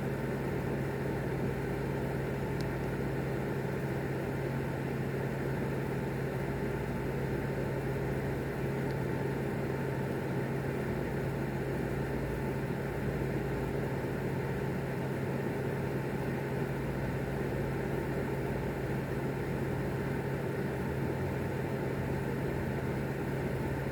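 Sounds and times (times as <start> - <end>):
low mechanical hum: 0.0 - 23.9.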